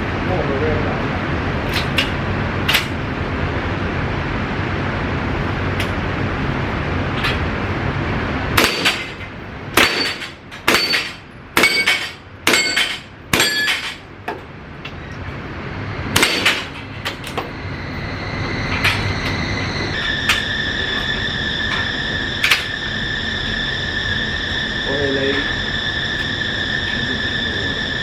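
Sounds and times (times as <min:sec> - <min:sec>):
gunshots with metallic ring: 0:08.6 - 0:09.1, 0:09.8 - 0:14.0, 0:16.2 - 0:16.7.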